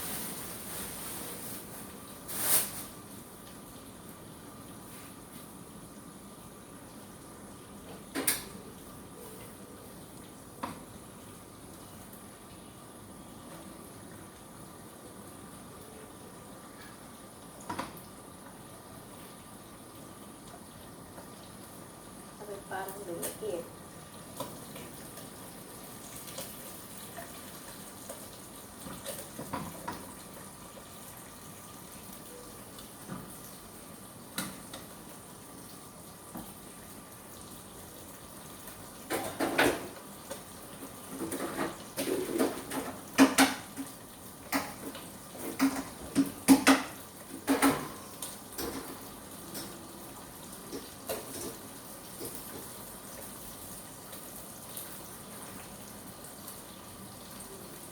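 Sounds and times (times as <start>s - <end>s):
tap water running into sink: 36.2s - 57.5s
pots and utensils clattering: 39.1s - 49.9s, 50.6s - 52.8s.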